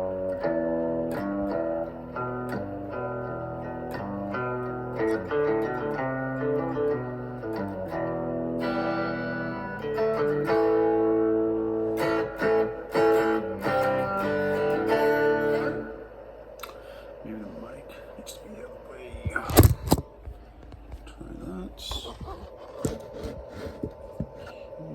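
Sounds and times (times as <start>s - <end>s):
guitar playing: 0.0s - 16.7s.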